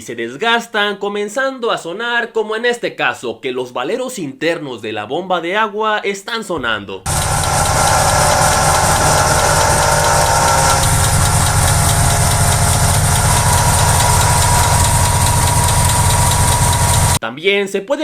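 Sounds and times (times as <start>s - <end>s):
car engine running: 7.1s - 17.2s.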